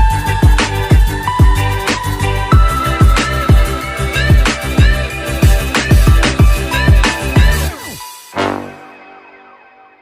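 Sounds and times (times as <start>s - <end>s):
steady bass: 0.0s - 7.8s
electronic hip-hop beat: 0.0s - 9.8s.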